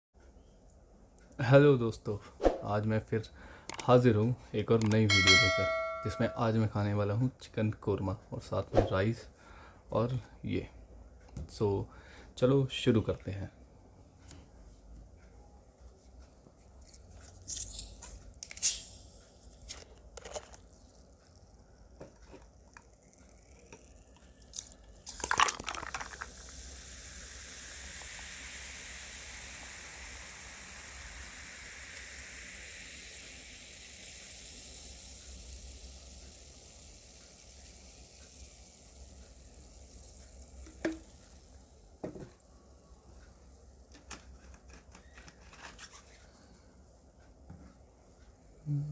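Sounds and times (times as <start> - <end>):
soda can opening: 17.5 - 21.1, 22.1 - 26.8, 40.6 - 41.2
carbonated drink fizzing: 20.2 - 41.6.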